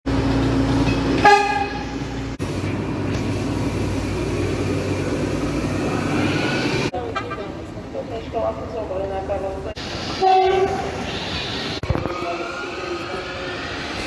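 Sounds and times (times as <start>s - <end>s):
train rumbling past: 0.1s - 14.0s
train horn blast: 1.2s - 2.1s, 10.2s - 11.0s.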